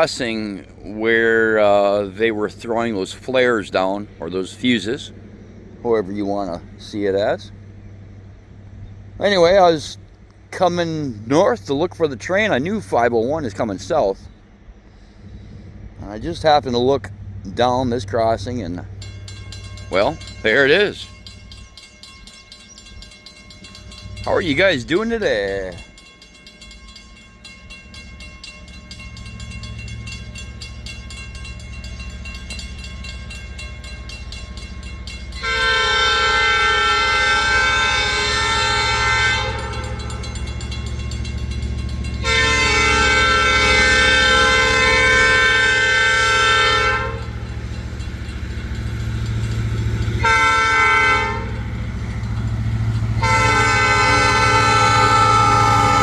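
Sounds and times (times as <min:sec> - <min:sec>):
diesel locomotive engine rumble: 0:00.0 - 0:56.0
train air horn blasts: 0:35.4 - 0:40.7, 0:42.1 - 0:47.6, 0:50.2 - 0:52.1, 0:53.0 - 0:56.0.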